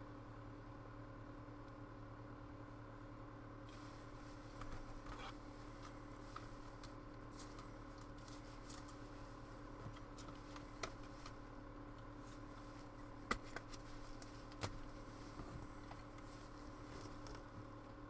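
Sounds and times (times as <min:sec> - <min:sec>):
steady electrical hum: 0:00.0 - 0:18.0.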